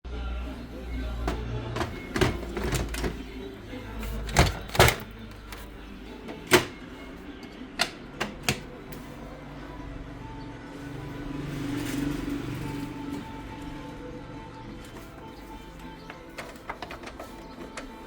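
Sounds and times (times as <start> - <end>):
hard plastic clicks and knocks: 4.1 - 5.7, 6.3 - 6.8.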